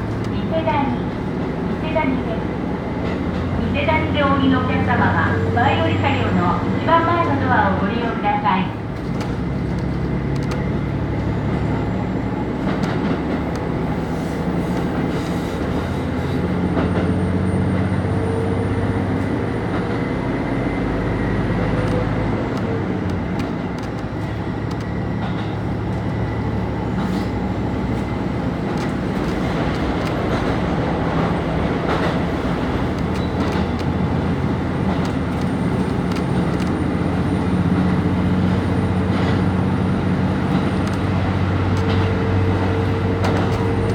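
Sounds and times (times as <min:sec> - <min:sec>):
railcar engine drone: 0:00.0 - 0:43.9
wheels clicking over rail joints: 0:27.0 - 0:43.9.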